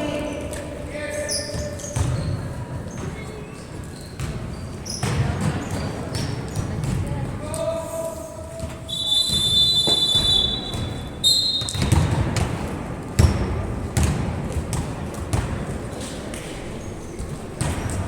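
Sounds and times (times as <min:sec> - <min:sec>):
referee's whistle blasts: 0:08.9 - 0:11.8.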